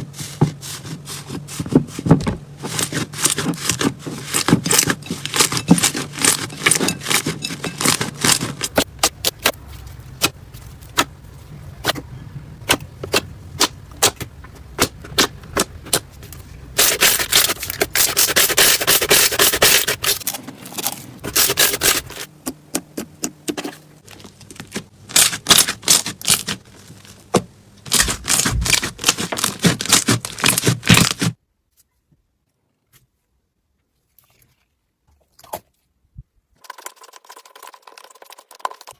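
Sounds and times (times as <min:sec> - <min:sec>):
slime crackling and squelching: 0:02.7 - 0:11.1, 0:23.6 - 0:27.2, 0:27.8 - 0:31.4.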